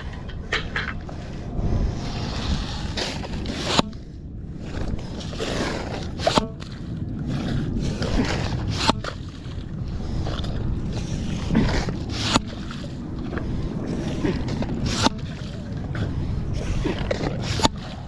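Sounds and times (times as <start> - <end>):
steady low rumble: 0.0 - 18.0
pump sucking wet sand: 4.7 - 9.2, 11.0 - 18.0.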